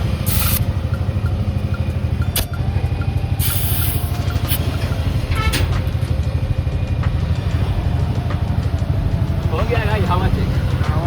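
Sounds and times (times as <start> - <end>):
compressed air hissing: 0.2 - 0.6, 3.4 - 4.1.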